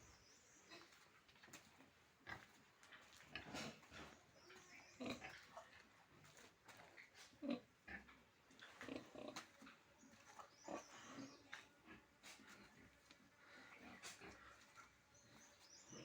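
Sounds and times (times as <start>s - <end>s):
pigs grunting: 3.3s - 4.2s, 4.8s - 5.8s, 7.2s - 9.5s.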